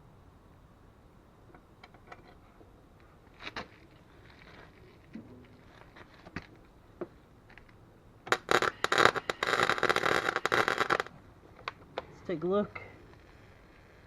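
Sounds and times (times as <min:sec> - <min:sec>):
welder arc crackling and sizzling: 0:08.3 - 0:11.1.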